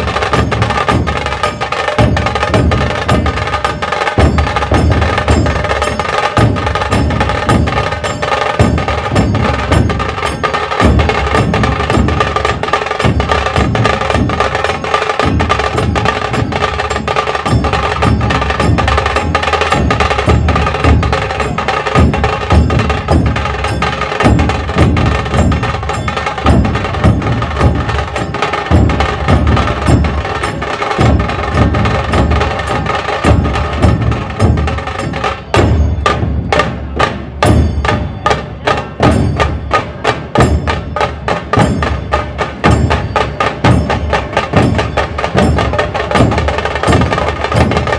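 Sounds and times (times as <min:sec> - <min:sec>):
metallic ringing: 0:00.0 - 0:36.6
deep barrel drum beats: 0:00.0 - 0:47.9
fast stick strokes on drums: 0:00.0 - 0:47.9.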